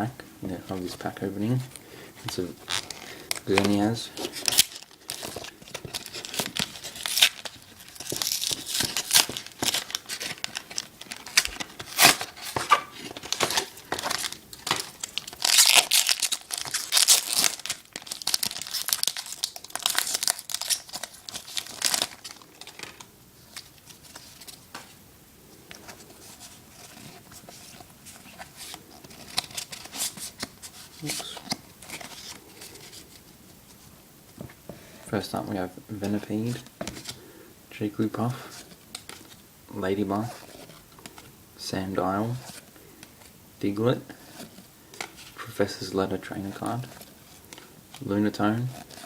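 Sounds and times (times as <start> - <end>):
handling cards: 0.7 - 25.0, 25.6 - 34.8
foil wrapper tearing and crinkling: 2.3 - 24.6, 26.8 - 33.1.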